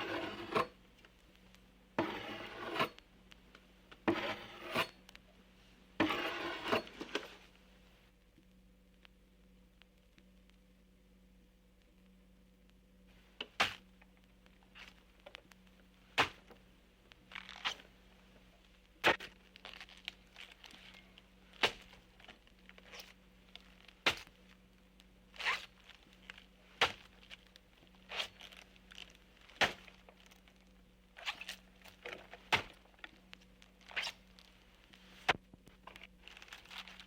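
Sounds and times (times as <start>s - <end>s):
soft scraping and rustling: 0.0s - 7.9s, 17.1s - 24.7s, 25.3s - 37.0s
faint steady hum: 0.0s - 37.0s.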